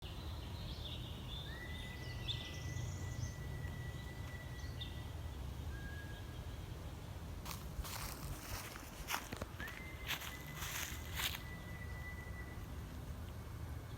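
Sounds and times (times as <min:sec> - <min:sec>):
faint chirps: 0:07.9 - 0:13.0.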